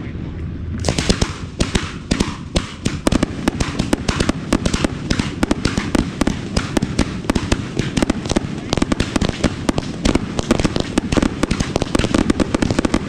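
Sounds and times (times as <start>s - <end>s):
fireworks bangs: 0.8s - 13.0s.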